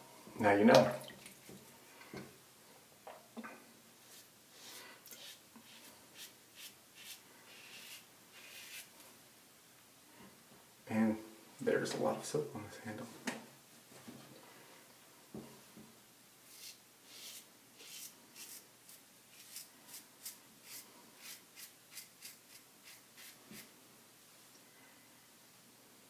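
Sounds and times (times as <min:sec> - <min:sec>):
razor scraping stubble: 0:05.2 - 0:08.9, 0:19.3 - 0:23.7.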